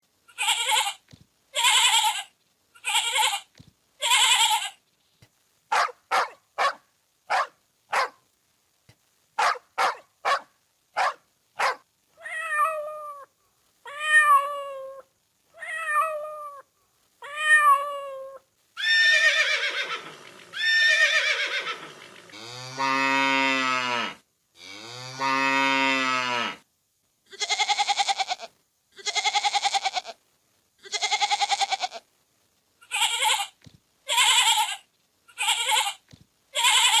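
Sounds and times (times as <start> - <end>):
goat bleating: 0.3 - 1.0, 1.6 - 4.8, 27.3 - 30.2, 30.8 - 32.0, 32.8 - 36.0, 36.6 - 37.0
meow-like calls: 12.2 - 22.4
cow mooing: 21.8 - 26.6.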